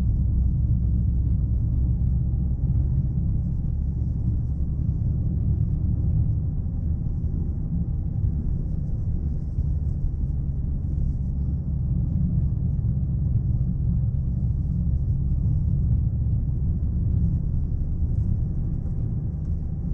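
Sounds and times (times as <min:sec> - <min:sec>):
car engine rumble: 0:00.0 - 0:19.9.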